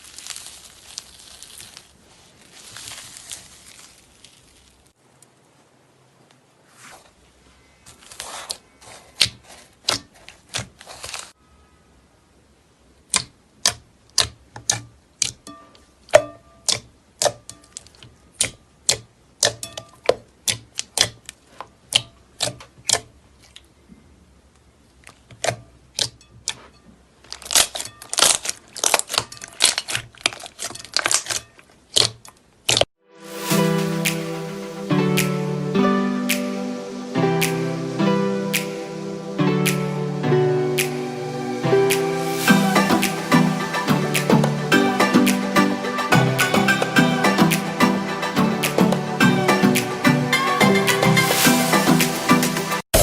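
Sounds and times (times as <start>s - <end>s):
slime crackling: 0.0s - 5.0s, 27.3s - 32.9s.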